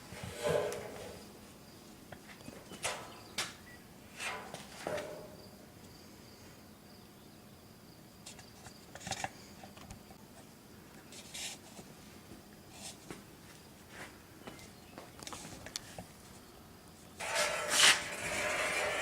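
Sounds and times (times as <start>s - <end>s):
soft scuffs: 11.2s - 15.6s.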